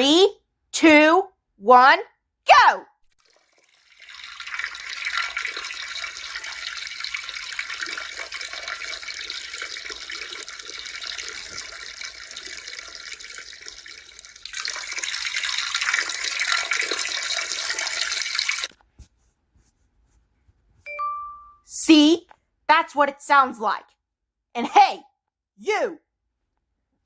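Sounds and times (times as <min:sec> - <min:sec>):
stream of urine splashing: 0:03.1 - 0:18.7.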